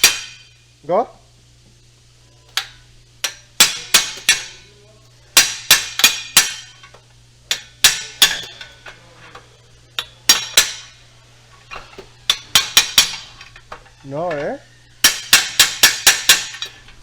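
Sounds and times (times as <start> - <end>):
hammer striking metal: 0.0 - 0.6, 2.5 - 4.7, 5.4 - 9.4, 10.0 - 11.0, 11.7 - 14.4, 15.0 - 17.0.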